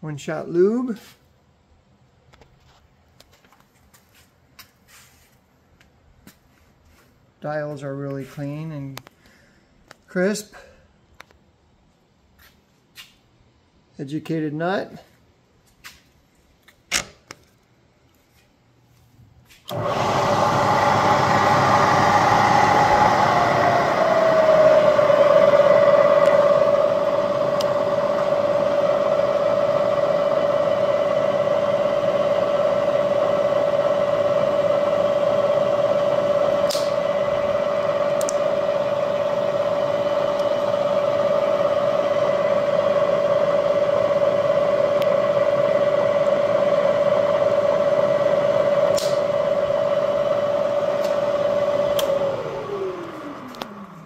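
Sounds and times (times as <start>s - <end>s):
milling machine spindle whine: 19.7s - 54.0s.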